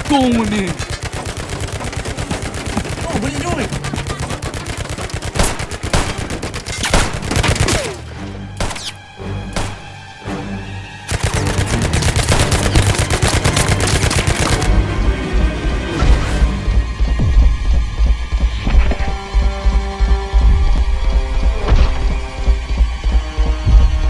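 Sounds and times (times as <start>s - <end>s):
rapid gunfire: 0.0s - 9.0s, 11.1s - 14.8s
dramatic action film score: 0.0s - 24.0s.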